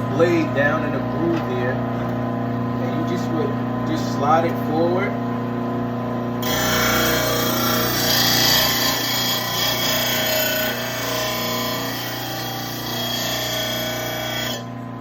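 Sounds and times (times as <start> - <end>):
motor hum: 0.0 - 15.0
grinding stone grinding steel blade: 6.4 - 14.7.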